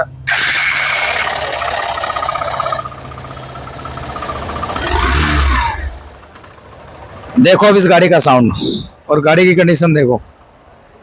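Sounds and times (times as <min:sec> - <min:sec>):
motorcycle engine running: 0:01.4 - 0:08.8.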